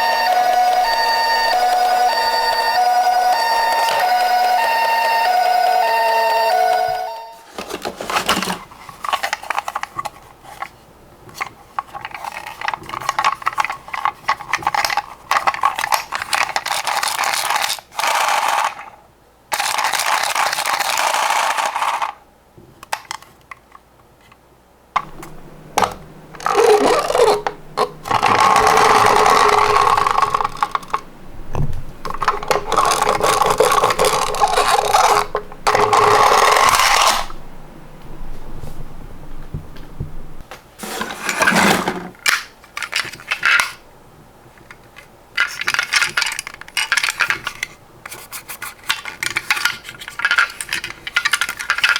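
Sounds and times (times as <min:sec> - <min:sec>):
toy car wheels rattling: 0:00.0 - 0:06.8, 0:07.4 - 0:22.2, 0:25.0 - 0:37.4, 0:40.8 - 0:43.8, 0:44.7 - 0:51.9
toy electronic siren: 0:00.0 - 0:07.5, 0:25.0 - 0:31.1, 0:32.1 - 0:37.3.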